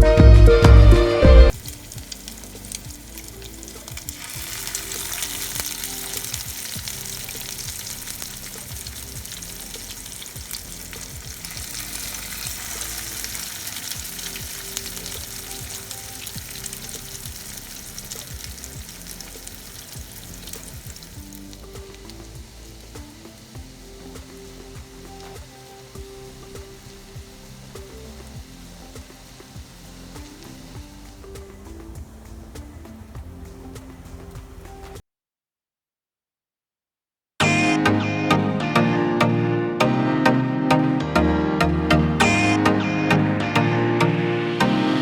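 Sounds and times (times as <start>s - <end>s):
patties sizzling in hot oil: 1.5s - 35.0s.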